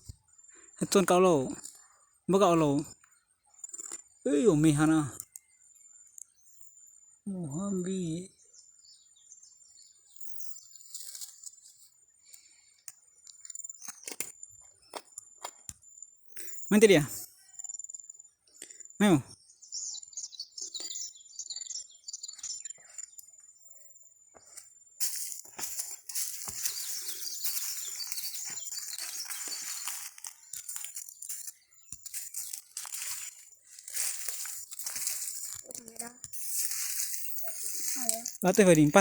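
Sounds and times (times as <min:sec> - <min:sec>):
high insect tone: 0:03.5 - 0:19.1, 0:19.7 - 0:39.0
close rustling and scratching: 0:25.0 - 0:38.4.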